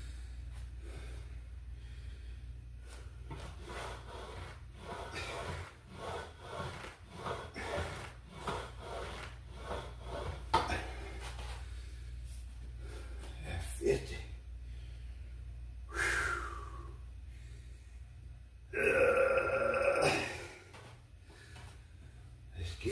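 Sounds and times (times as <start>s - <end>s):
exercise machine creaking: 3.3s - 10.9s.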